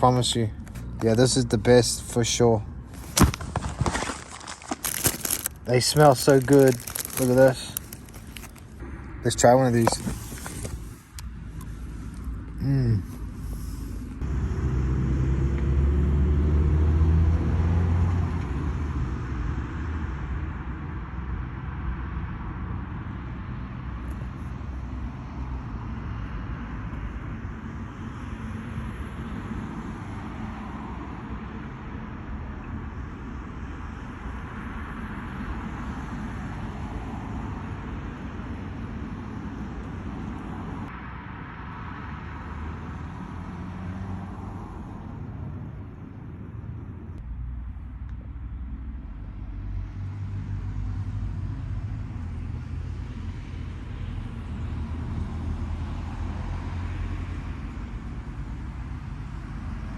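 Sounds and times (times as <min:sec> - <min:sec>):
steady traffic hum: 0:00.0 - 0:59.9
vehicle passing with engine drone: 0:13.3 - 0:59.9.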